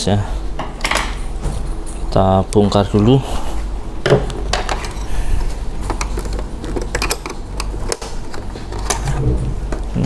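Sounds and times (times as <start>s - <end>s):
screwdrivers and plastic clicking: 5.8s - 9.1s.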